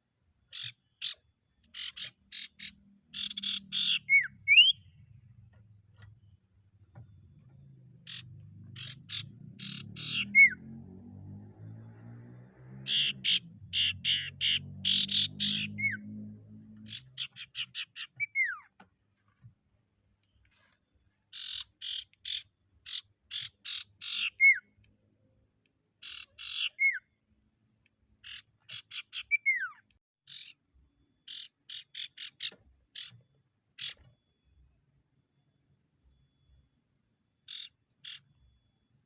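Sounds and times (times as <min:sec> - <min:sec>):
bird harsh chattering: 0:00.5 - 0:04.7, 0:08.8 - 0:10.6, 0:21.3 - 0:24.6.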